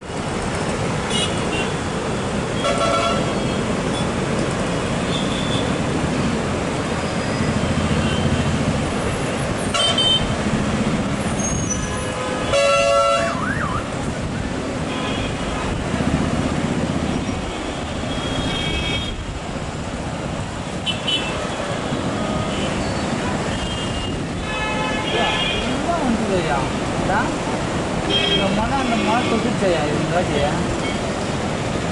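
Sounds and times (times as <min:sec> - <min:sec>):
road traffic: 0:00.0 - 0:31.9
vehicle horns tooting: 0:01.1 - 0:01.8, 0:02.6 - 0:04.1, 0:05.0 - 0:05.8, 0:09.7 - 0:10.3, 0:11.4 - 0:13.8, 0:17.4 - 0:19.2, 0:20.8 - 0:25.9, 0:28.0 - 0:29.6.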